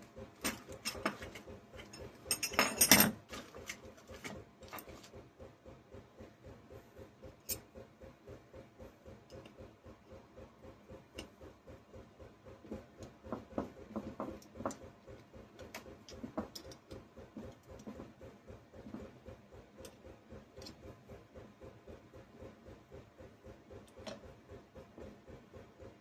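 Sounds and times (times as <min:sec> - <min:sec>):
small parts and tools clinking: 0:00.4 - 0:05.1.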